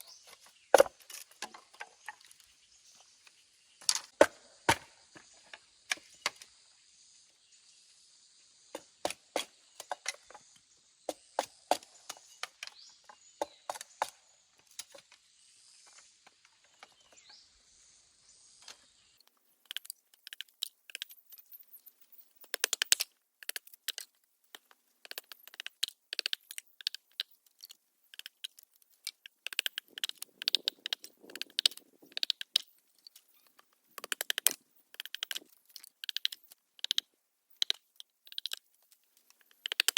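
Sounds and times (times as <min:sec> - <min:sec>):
wood being chopped: 0:00.7 - 0:02.1, 0:03.9 - 0:06.4.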